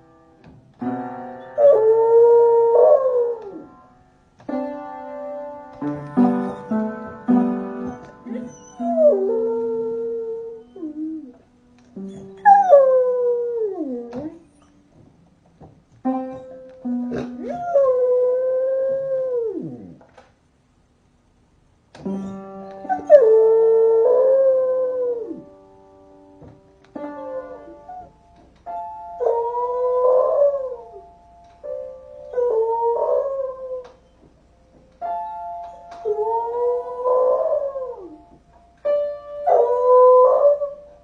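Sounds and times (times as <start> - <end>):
piano music: 0.0 - 20.0, 22.0 - 41.0
puppy howling: 7.8 - 11.4.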